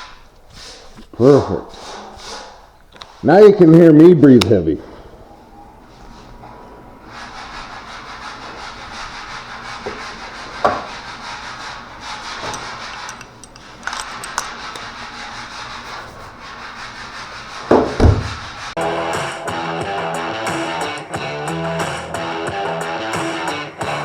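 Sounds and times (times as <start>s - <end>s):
sandpaper rubbing on filler: 0.0s - 3.3s, 5.9s - 18.8s.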